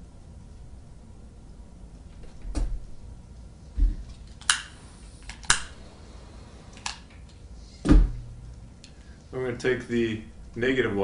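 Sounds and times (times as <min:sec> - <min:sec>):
dull thump: 0:07.8 - 0:08.4.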